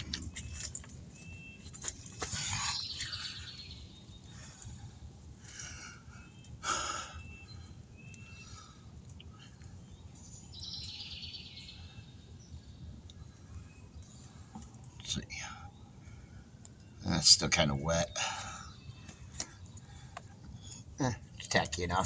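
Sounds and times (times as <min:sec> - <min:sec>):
faint high bird chirps: 0:01.1 - 0:04.9, 0:05.6 - 0:20.0.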